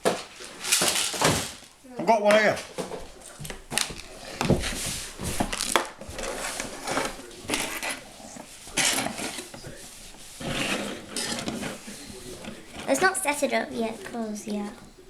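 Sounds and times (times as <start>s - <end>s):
plastic bricks rattling: 0.0s - 1.8s, 10.4s - 14.2s.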